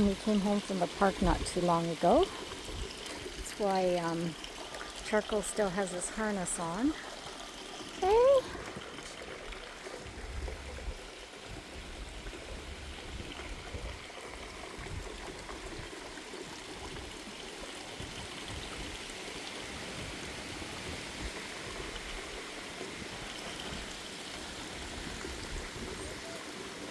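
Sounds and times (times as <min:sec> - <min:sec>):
wind buffeting the microphone: 0:10.0 - 0:16.1, 0:24.7 - 0:26.2.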